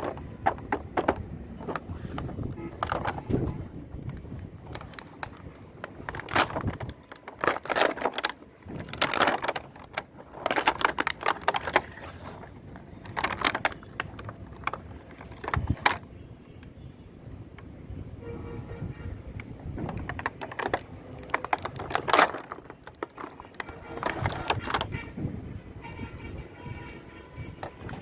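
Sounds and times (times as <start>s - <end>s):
plastic packaging crinkling: 0.0s - 16.2s, 19.4s - 25.0s
plastic toy pieces clicking: 0.0s - 16.7s, 19.4s - 25.0s.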